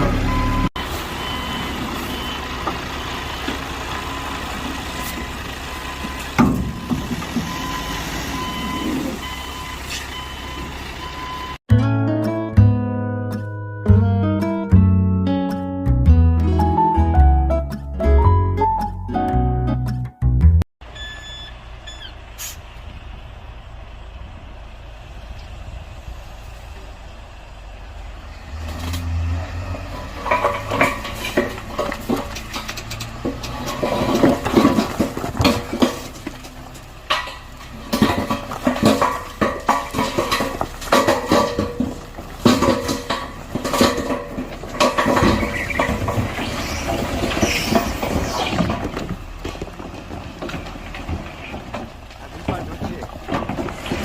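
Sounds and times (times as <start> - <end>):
excavator engine running: 0.0 - 11.6
bucket clanking and scraping: 4.5 - 11.5, 28.5 - 54.0.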